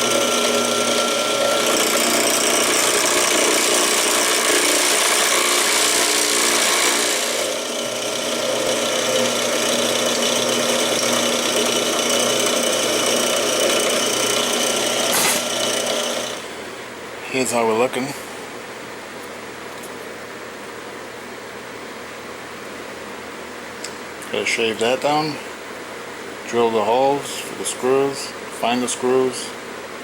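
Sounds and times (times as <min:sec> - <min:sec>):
power tool motor hum: 0:00.0 - 0:16.5
abrasive grinding on wood: 0:13.2 - 0:16.4.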